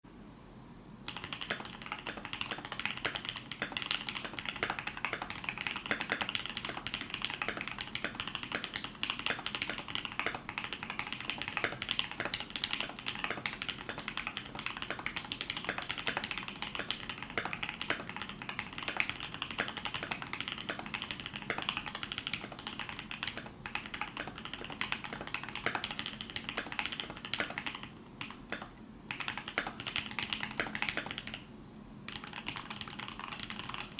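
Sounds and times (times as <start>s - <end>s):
fast mechanical keyboard typing: 1.1s - 31.5s, 32.1s - 33.9s.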